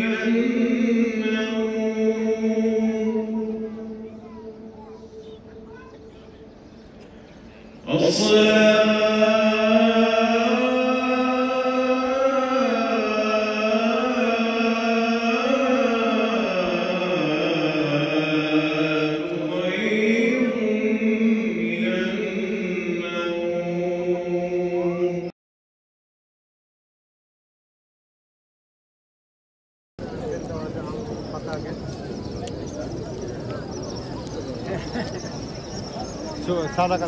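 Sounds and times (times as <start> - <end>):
man chanting: 0.0 - 4.0, 7.7 - 25.3.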